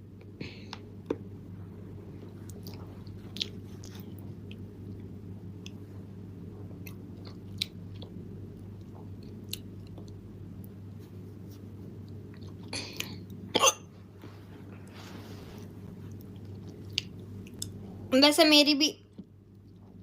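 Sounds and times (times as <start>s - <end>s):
low hum: 0.0s - 20.0s
woman hiccuping: 13.5s - 13.9s.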